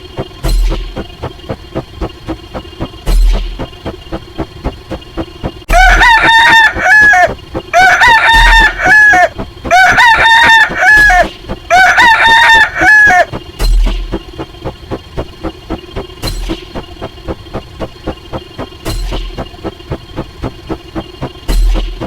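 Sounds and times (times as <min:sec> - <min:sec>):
rooster crowing: 0:05.7 - 0:13.3.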